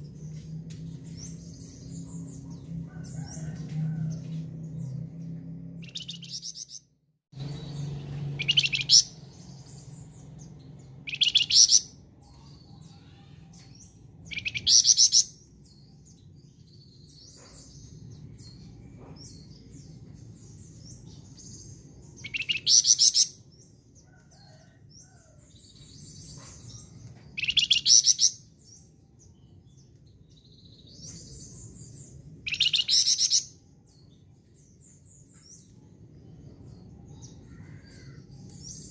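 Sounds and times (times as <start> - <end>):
soft bird chirps: 5.8 - 6.8, 7.4 - 23.3
songbird trilling: 5.8 - 6.8, 7.4 - 13.2, 14.2 - 15.4, 22.1 - 23.3, 26.7 - 28.4, 32.4 - 33.5.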